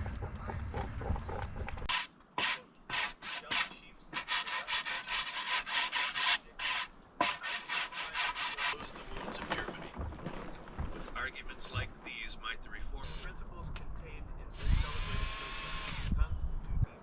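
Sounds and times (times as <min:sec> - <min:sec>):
rhythmic rubbing on wood: 0:00.0 - 0:09.0.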